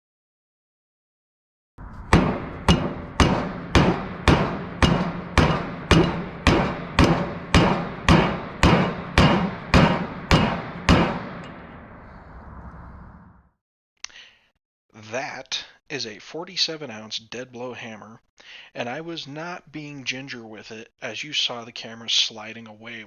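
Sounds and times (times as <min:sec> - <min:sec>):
dead blow hammer blows ringing: 0:01.9 - 0:12.0.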